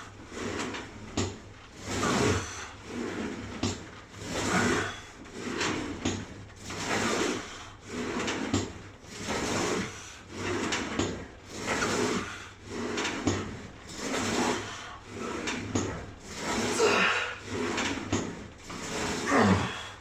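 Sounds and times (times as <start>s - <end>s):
sled sliding on rails: 0.0s - 20.0s.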